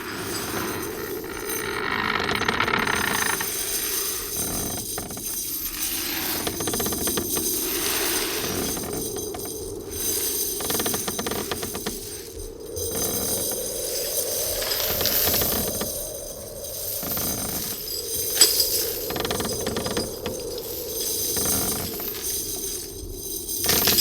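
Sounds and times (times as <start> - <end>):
wooden stairs creaking: 0.0 - 5.6, 6.2 - 7.6, 10.2 - 12.1, 17.0 - 22.5.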